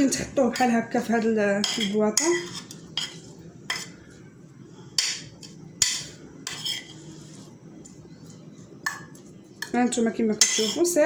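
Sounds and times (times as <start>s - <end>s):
kitchenware clinking against glass: 10.4s - 10.9s.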